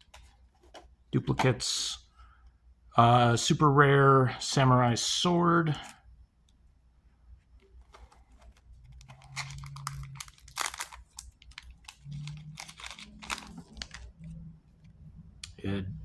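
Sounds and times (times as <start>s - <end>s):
cards rustling: 7.5s - 15.0s
foil wrapper tearing and crinkling: 8.9s - 14.2s.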